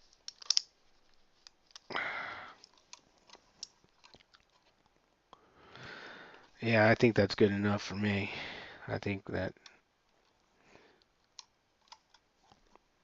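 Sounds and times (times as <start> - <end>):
screwdriver clicks and scrapes: 0.0 - 0.7.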